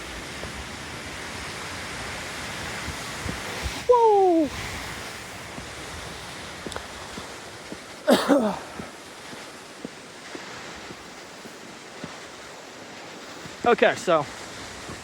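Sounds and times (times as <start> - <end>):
waterfall rushing: 0.0 - 15.0
man whooping: 3.9 - 4.6.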